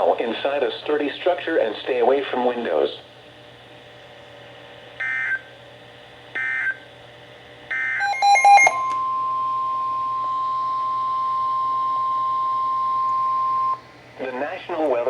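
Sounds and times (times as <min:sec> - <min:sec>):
steady warning alarm tone: 0:05.0 - 0:05.5, 0:06.4 - 0:06.8, 0:07.7 - 0:13.8
beeps and clicks: 0:07.9 - 0:09.1.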